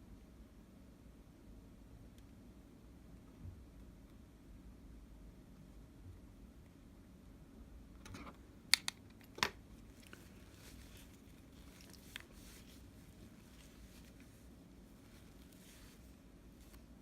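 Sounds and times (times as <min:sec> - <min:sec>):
plastic crinkling: 0:09.8 - 0:17.0.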